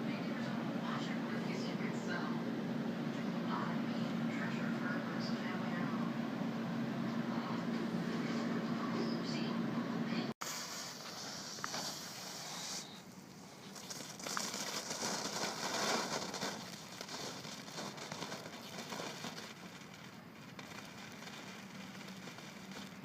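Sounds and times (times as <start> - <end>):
fountain firework hissing and crackling: 10.3 - 23.0.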